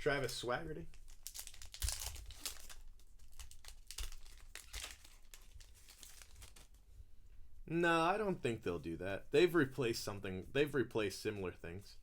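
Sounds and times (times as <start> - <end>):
packaging crinkling: 0.2 - 6.8.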